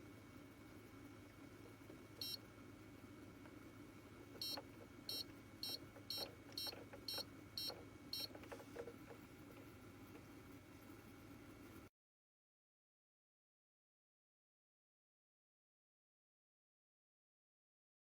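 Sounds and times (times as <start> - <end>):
steady low hum: 0.0 - 11.9
appliance beeping: 2.2 - 2.4, 4.4 - 8.4.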